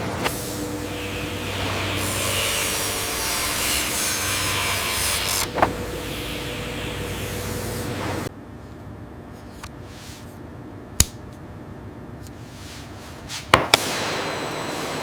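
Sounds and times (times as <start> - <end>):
low machine hum: 0.0 - 13.3
wood being sawn: 0.5 - 8.2.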